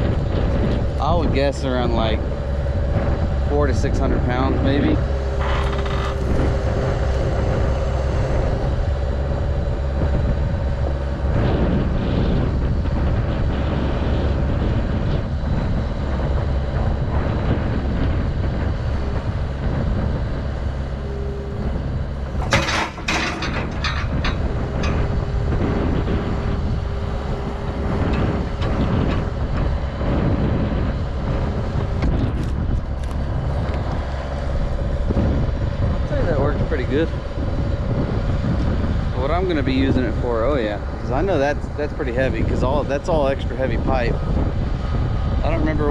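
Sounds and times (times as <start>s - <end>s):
machine engine running under load: 0.0s - 45.9s.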